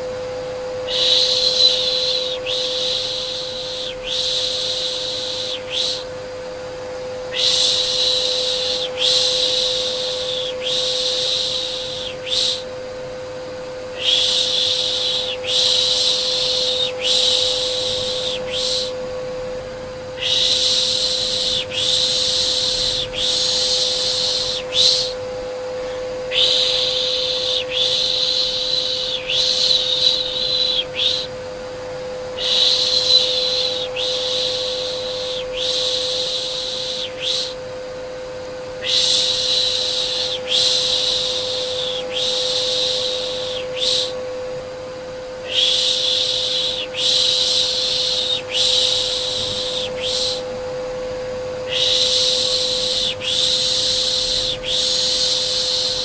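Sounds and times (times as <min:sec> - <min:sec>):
vacuum cleaner motor hum: 0:00.0 - 0:56.0
person shushing: 0:14.0 - 0:19.0, 0:20.2 - 0:25.2, 0:25.8 - 0:31.3, 0:32.4 - 0:37.6, 0:45.4 - 0:50.6, 0:51.7 - 0:56.0.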